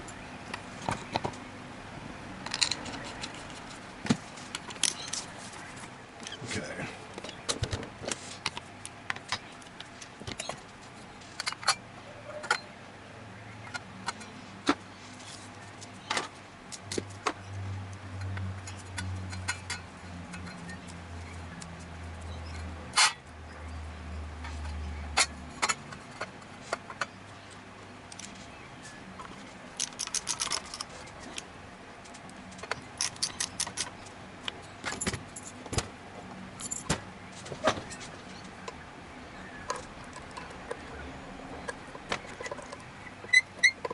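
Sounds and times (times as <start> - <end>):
metal parts and tools clinking: 2.4 - 3.8, 29.8 - 31.4, 32.5 - 34.0, 36.6 - 37.0.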